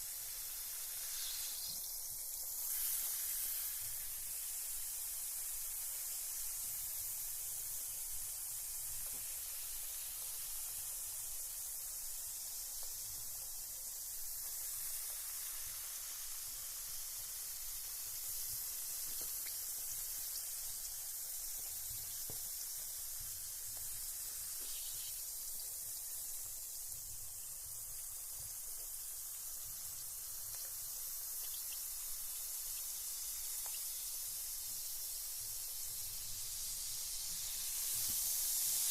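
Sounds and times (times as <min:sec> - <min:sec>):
bath bomb fizzing in water: 0:00.0 - 0:38.9
faint ticks: 0:32.6 - 0:34.0.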